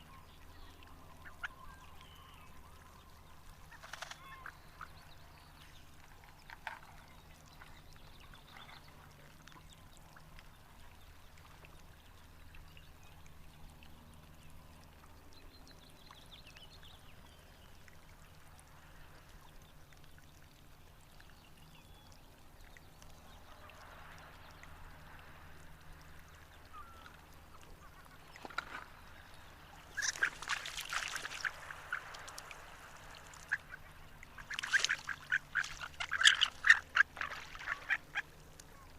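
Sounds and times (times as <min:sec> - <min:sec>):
duck calling: 0:34.4 - 0:38.2.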